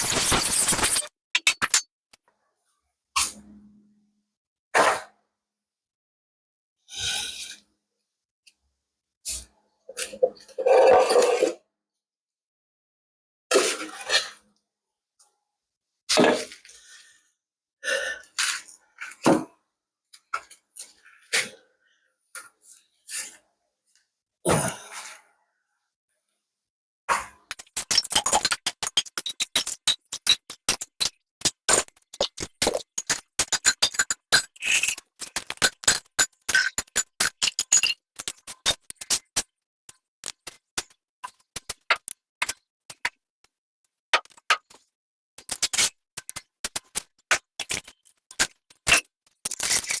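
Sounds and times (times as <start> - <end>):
rapid clicking and clinking: 0.0 - 1.8, 27.5 - 39.4, 45.4 - 50.0.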